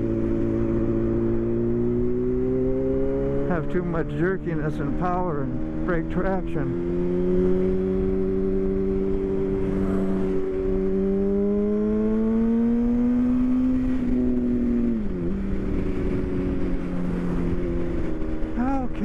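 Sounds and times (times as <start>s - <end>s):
motorcycle engine accelerating: 0.0s - 19.0s
wind rushing: 8.9s - 10.8s.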